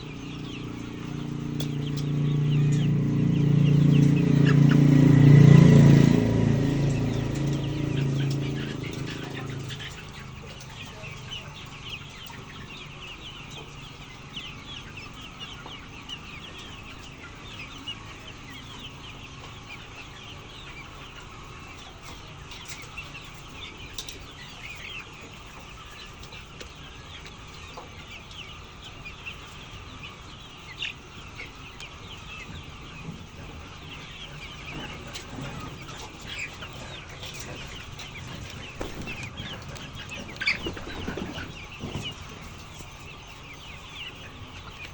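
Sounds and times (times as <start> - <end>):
chickens clucking and calling: 0.0 - 44.9.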